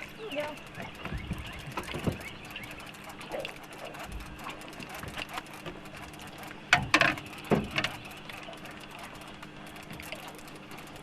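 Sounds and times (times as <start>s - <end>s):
sharp knocks and clatters: 6.7s - 8.0s.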